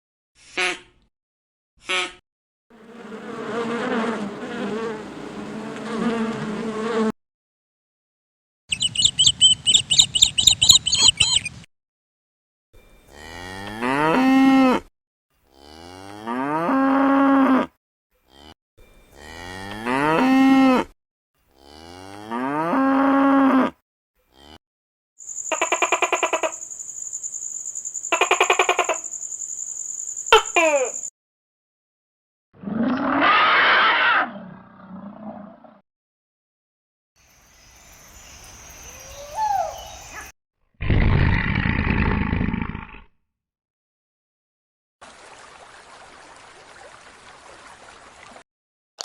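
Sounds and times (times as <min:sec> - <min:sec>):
rapid high chirping: 0:08.7 - 0:11.5, 0:25.2 - 0:31.1
cow mooing: 0:13.1 - 0:14.8, 0:15.5 - 0:17.7, 0:18.3 - 0:20.8, 0:21.5 - 0:24.6.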